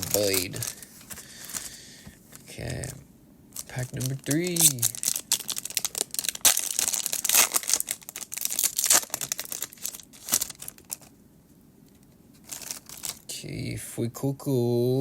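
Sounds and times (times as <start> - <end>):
foil wrapper crinkling and tearing: 0.0 - 1.8, 3.6 - 11.1, 12.4 - 13.2.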